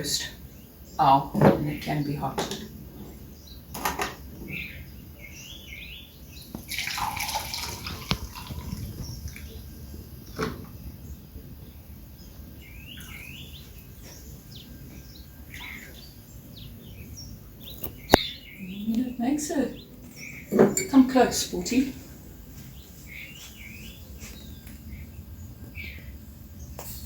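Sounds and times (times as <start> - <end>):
small birds chirping: 0.0 - 27.0
liquid dripping: 6.5 - 9.7
coffee splashing pour: 6.6 - 9.6.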